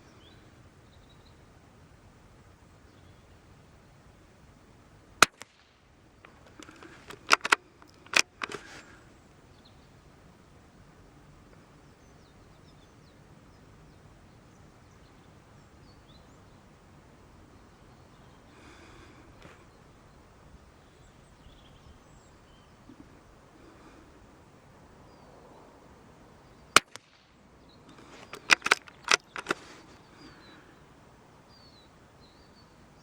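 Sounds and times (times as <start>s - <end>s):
rifle bolt metallic clicks: 5.2s - 5.6s, 6.2s - 8.8s, 26.8s - 27.2s, 27.9s - 29.9s
faint bird chirps: 8.6s - 28.5s, 29.3s - 33.0s.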